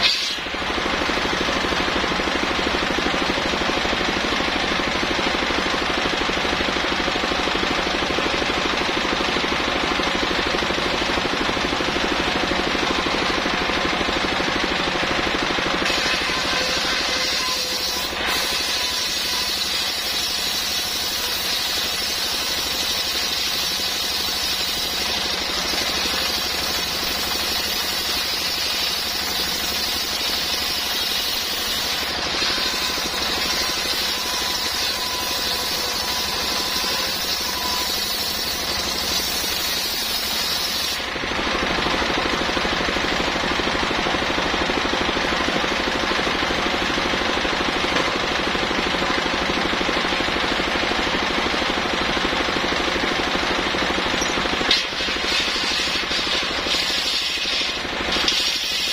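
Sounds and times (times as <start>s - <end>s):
circular saw cutting wood: 0.0s - 41.6s, 53.6s - 58.9s.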